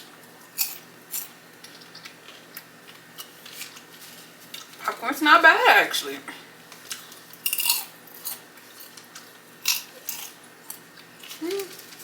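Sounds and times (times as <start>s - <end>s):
chewing crunchy popcorn: 0.0s - 4.8s, 6.7s - 12.0s.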